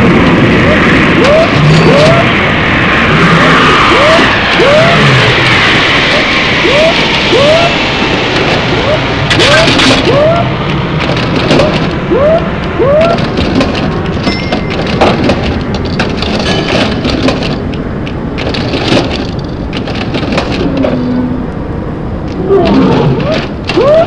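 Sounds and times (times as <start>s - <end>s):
continuous roar like rain: 0.0s - 24.0s
short rising calls: 0.6s - 10.6s
clicks and knocks: 9.3s - 21.2s.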